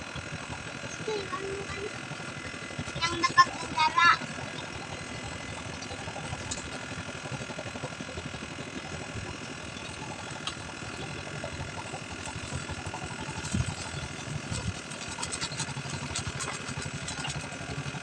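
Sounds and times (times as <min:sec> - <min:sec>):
small engine chugging: 0:00.0 - 0:18.0.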